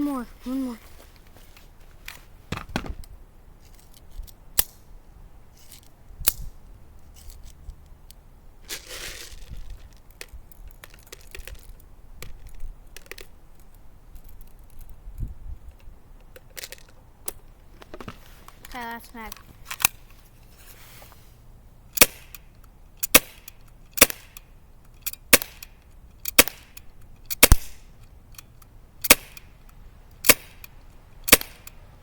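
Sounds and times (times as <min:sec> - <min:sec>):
airsoft pistol shots: 0:22.0 - 0:22.4, 0:23.1 - 0:24.4, 0:25.3 - 0:25.7, 0:26.3 - 0:26.8, 0:27.4 - 0:27.8, 0:29.0 - 0:29.4, 0:30.2 - 0:30.6, 0:31.3 - 0:31.7.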